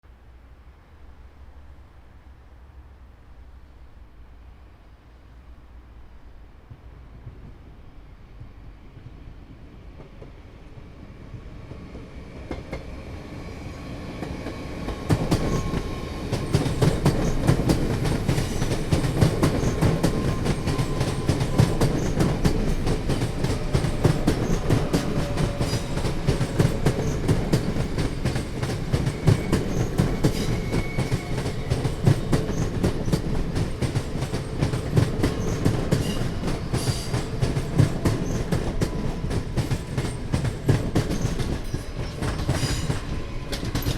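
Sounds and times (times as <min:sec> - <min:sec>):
train wheels clacking: 0:10.0 - 0:43.9.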